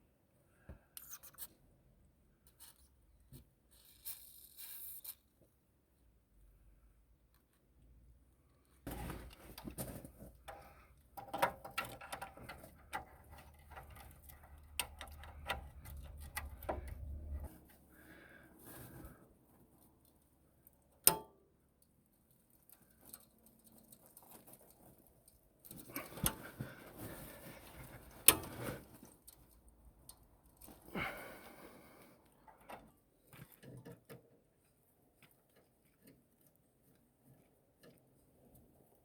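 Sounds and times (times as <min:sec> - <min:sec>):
tools scraping and rattling: 0:25.7 - 0:29.6.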